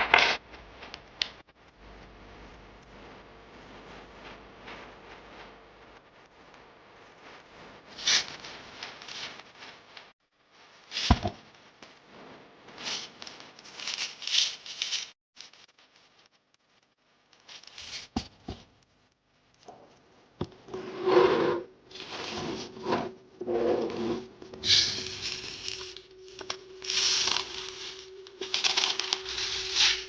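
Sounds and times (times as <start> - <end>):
rubbing and scraping: 20.5 - 30.0.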